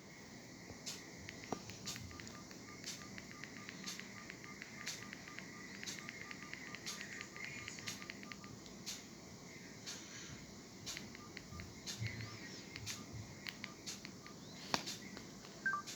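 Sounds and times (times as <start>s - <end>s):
phone ringtone beeps: 1.9s - 8.6s, 10.9s - 14.5s, 15.6s - 15.9s
sharp click: 10.9s - 15.3s.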